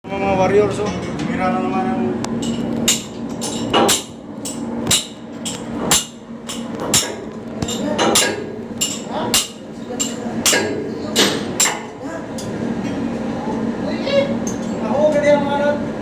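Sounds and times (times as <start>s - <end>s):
hammer striking metal: 2.9s - 12.0s.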